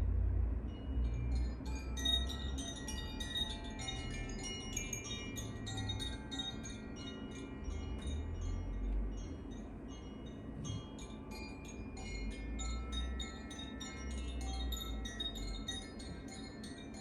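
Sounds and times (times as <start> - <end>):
low rumble: 0.0 - 6.8
carillon chimes ringing: 0.7 - 17.0.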